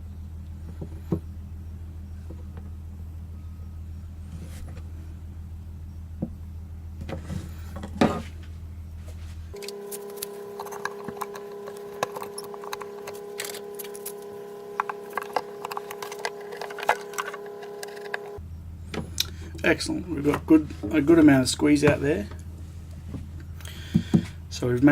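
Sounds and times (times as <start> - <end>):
electrical hum: 0.0 - 24.9.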